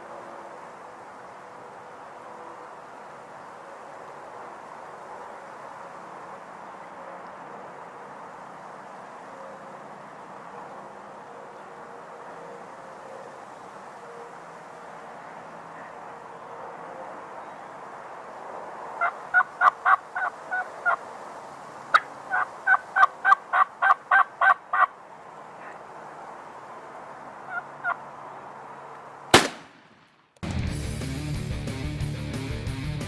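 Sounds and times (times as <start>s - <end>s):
turkey calling: 19.0s - 21.0s, 21.9s - 24.9s, 27.5s - 28.0s
shotgun shot: 29.3s - 30.1s.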